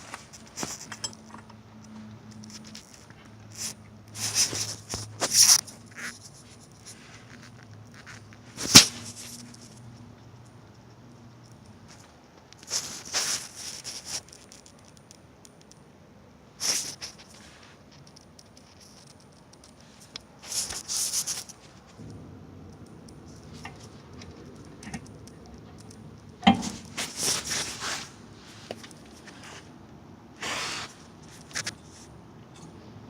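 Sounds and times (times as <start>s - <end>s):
metal scraping and rattling: 23.2s - 28.0s.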